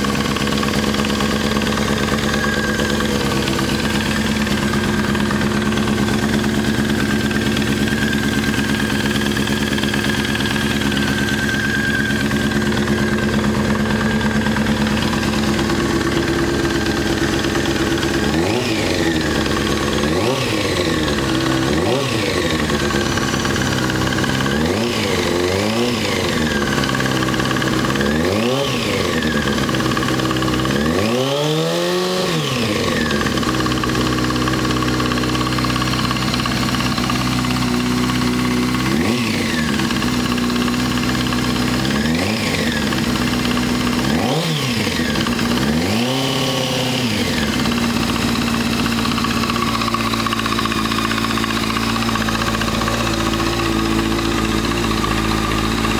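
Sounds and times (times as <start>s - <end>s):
motorcycle engine idling and revving: 0.0s - 55.9s
engine ticking noise: 32.1s - 55.9s.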